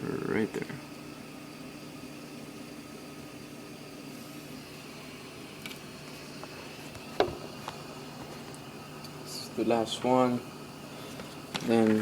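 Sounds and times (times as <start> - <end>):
room noise hum and hiss: 0.0 - 12.0.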